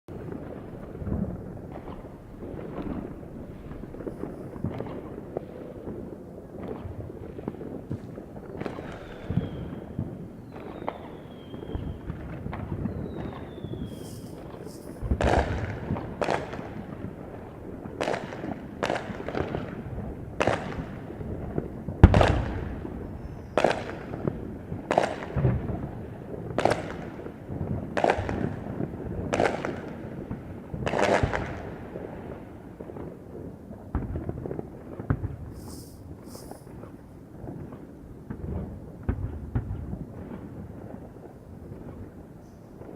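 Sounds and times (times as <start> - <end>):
firework bangs: 0.1 - 25.9, 33.8 - 42.1
firework falling whistles: 8.6 - 15.6, 35.4 - 37.2
firework hissing fizzes: 13.8 - 15.2, 35.4 - 37.2.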